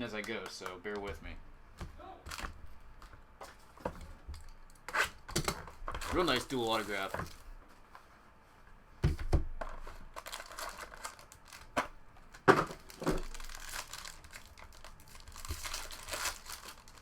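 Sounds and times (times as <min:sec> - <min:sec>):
card handling clicks and taps: 0:00.1 - 0:03.6
plastic card sleeves crinkling: 0:06.1 - 0:07.4, 0:10.1 - 0:17.0.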